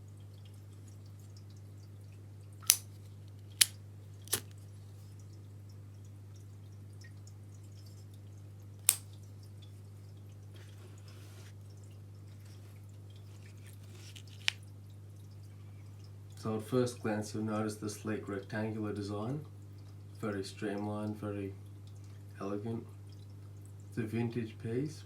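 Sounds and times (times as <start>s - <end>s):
lighter clicking: 2.6s - 2.9s, 3.6s - 4.5s, 8.8s - 9.1s.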